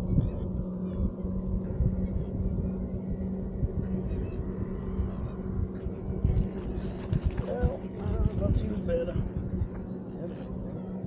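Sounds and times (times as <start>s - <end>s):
boat motor humming: 0.0s - 11.0s
wind rumble on microphone: 0.0s - 11.0s.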